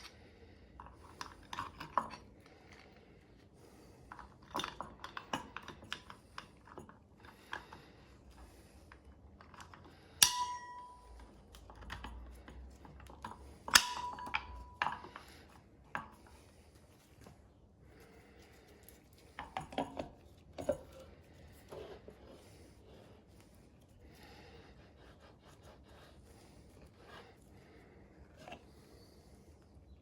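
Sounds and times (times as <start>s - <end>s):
tools clicking and tapping on metal: 0.8s - 2.9s, 4.1s - 7.9s, 8.9s - 16.4s, 18.8s - 22.0s
sharp metallic clanks: 10.2s - 11.2s, 13.7s - 15.1s.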